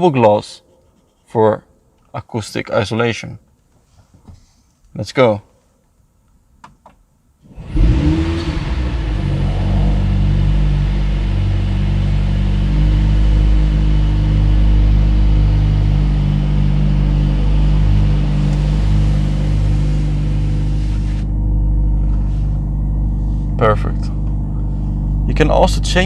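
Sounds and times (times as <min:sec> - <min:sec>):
car engine starting and idling: 0:07.4 - 0:26.0.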